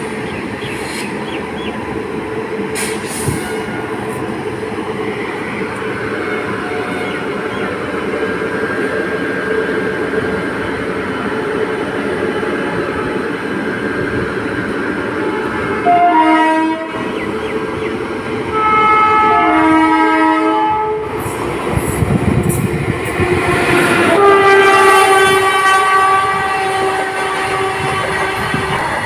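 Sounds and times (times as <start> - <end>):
train running noise: 0.0 - 29.0
locomotive multi-tone horn: 5.4 - 7.6, 15.4 - 17.1, 18.4 - 21.1, 23.2 - 29.0.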